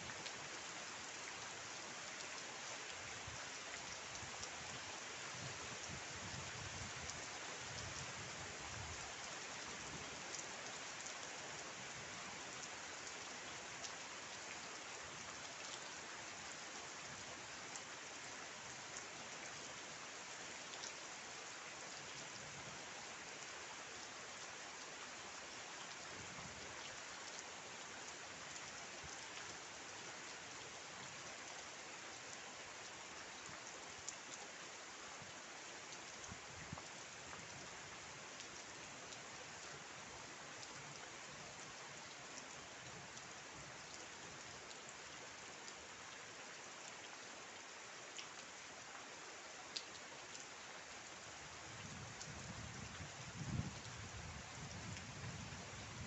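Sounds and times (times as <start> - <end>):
steady rainfall: 0.0 - 56.0.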